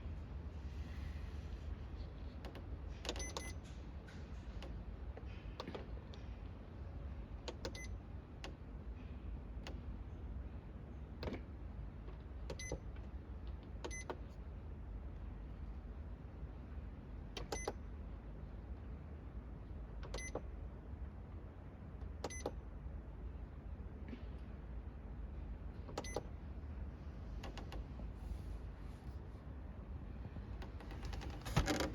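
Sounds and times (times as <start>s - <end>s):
steady low hum: 0.0s - 31.9s
control panel beeps: 3.1s - 3.6s, 17.4s - 17.8s, 22.3s - 22.6s, 26.0s - 26.3s.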